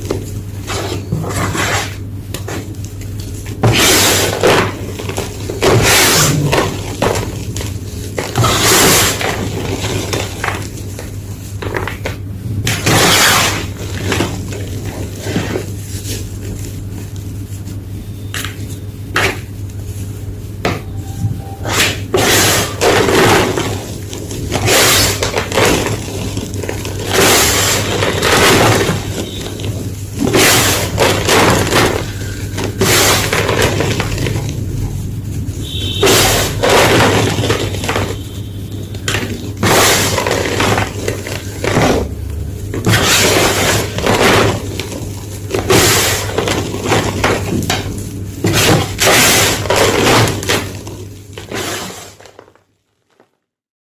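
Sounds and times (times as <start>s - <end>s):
chalk blocks crunching: 0.0s - 21.0s, 21.6s - 53.3s.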